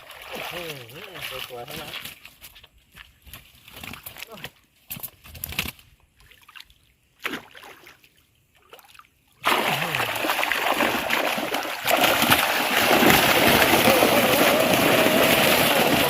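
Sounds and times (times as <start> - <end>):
water splashing and pouring: 0.0 - 2.3, 8.7 - 16.0.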